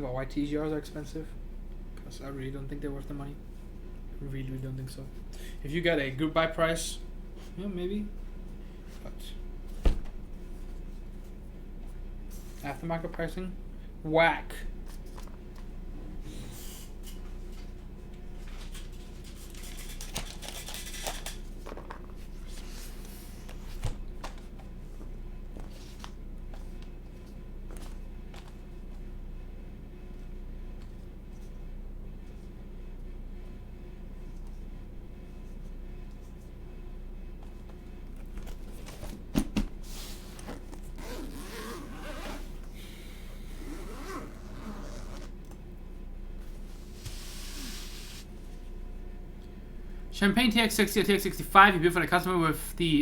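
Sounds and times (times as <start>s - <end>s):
low electrical hum: 0.0s - 53.0s
zipper-like rasping scrape: 41.0s - 42.5s, 43.3s - 45.3s.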